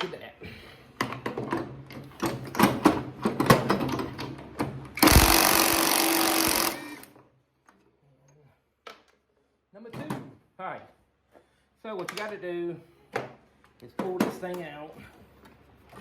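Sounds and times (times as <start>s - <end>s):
impact wrench running: 5.0s - 7.1s.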